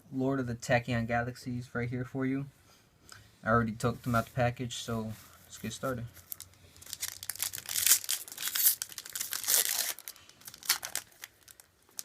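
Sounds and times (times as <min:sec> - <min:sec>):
foil wrapper crinkling and tearing: 0:06.2 - 0:12.0.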